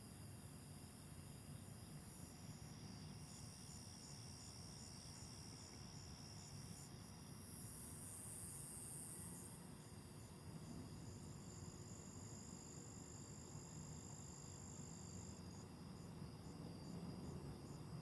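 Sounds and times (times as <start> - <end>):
insect chirping: 0.0 - 18.0
insect chorus: 0.0 - 18.0.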